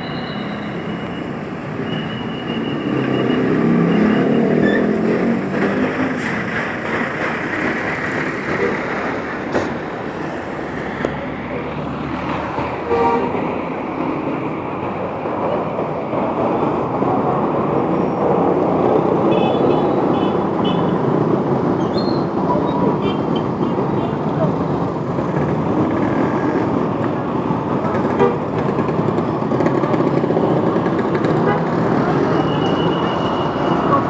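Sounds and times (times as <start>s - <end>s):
road traffic noise: 0.0s - 34.0s
vehicle approaching: 0.8s - 12.8s, 22.4s - 34.0s.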